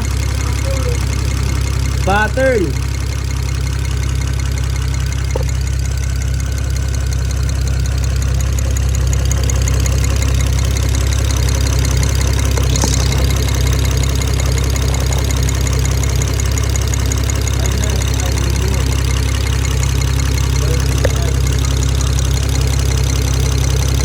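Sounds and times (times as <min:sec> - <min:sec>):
car engine idling: 0:00.0 - 0:24.0
engine ticking: 0:00.0 - 0:24.0.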